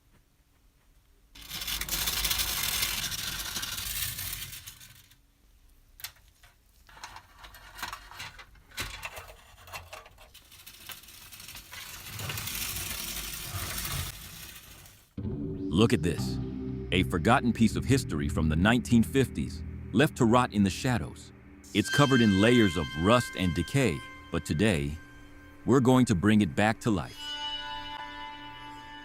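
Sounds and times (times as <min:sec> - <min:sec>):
metal object scraping: 0:11.8 - 0:28.6.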